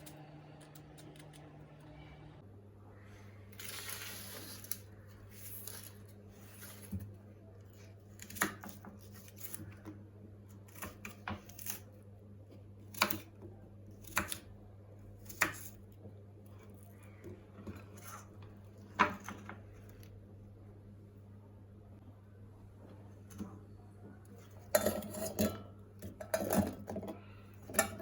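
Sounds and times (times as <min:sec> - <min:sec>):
steady low hum: 0:00.0 - 0:03.7.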